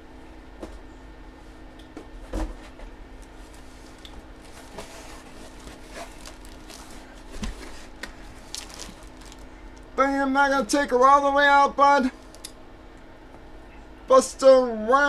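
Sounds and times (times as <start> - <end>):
steady low hum: 0.0 - 15.0
packaging clicks and rustles: 3.2 - 9.9.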